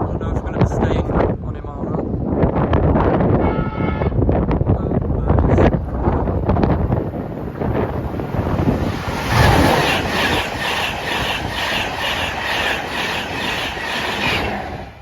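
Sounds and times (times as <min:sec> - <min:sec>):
train wheels clattering over rails: 0:07.6 - 0:15.0.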